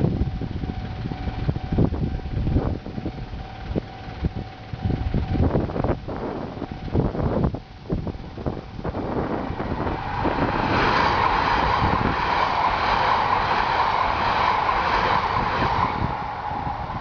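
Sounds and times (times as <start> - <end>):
train wheels rushing on rails: 8.2 - 17.0.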